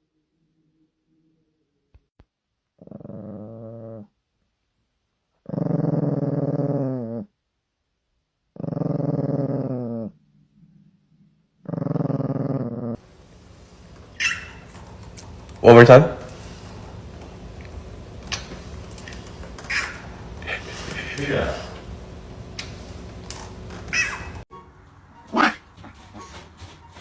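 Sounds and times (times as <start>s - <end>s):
dog long low vocalizing: 2.8s - 4.1s, 5.4s - 7.3s, 8.6s - 13.0s.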